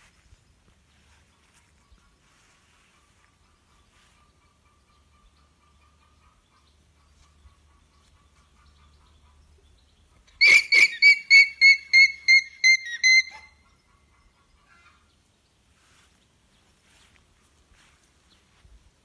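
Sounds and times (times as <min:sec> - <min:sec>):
alpaca shrill alarm calls: 0:10.4 - 0:13.6.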